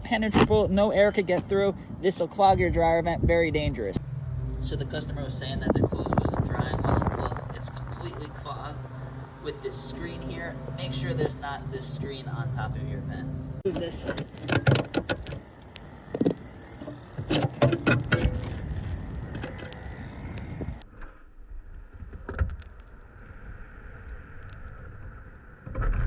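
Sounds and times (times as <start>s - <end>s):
vent screen clattering and scraping: 13.7s - 20.8s.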